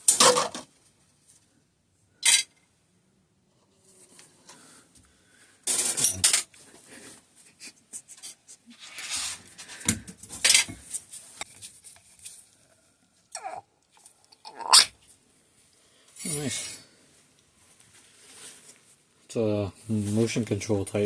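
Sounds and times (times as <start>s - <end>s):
scraping and rustling: 5.7s - 12.6s.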